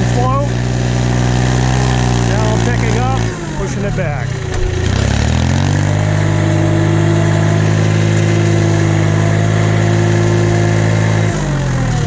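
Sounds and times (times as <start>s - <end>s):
tractor engine at high revs: 0.0s - 12.0s.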